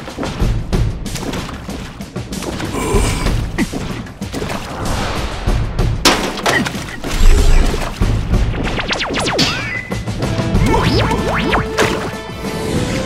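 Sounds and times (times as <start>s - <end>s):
cartoon music: 10.6s - 11.8s.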